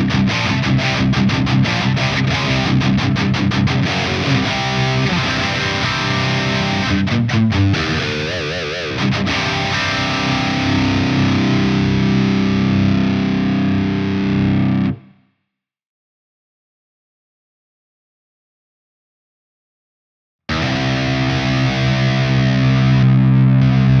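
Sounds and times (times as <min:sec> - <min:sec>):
distorted electric guitar: 0:00.0 - 0:15.2, 0:20.5 - 0:24.0.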